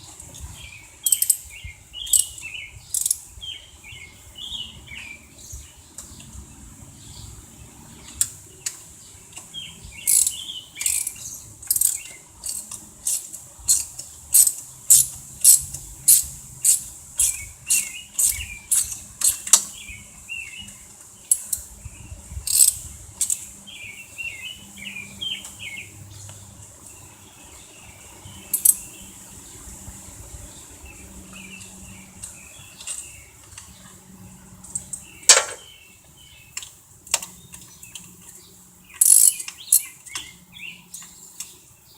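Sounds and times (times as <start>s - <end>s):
birds chirping: 0.0s - 41.9s
socket ratchet clicking: 1.1s - 1.4s, 2.1s - 3.2s, 10.1s - 19.7s, 22.5s - 23.5s, 28.5s - 28.8s, 39.0s - 39.9s.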